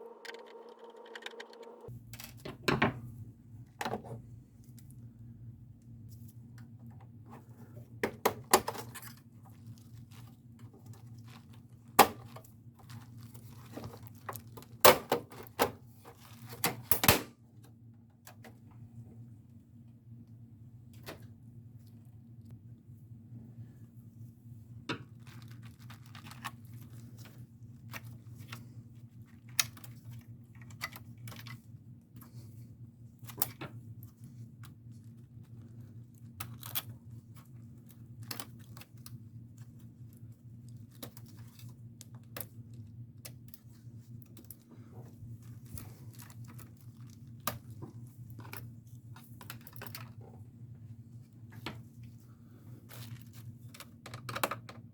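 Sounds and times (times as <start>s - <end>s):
steady low hum: 26.4s - 54.1s
clicks and taps of plastic parts: 53.7s - 54.9s.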